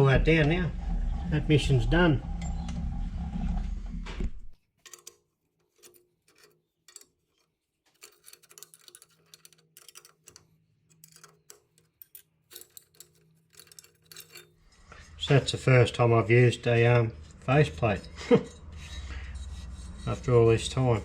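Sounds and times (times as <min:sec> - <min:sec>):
faint low hum: 0:00.0 - 0:04.6.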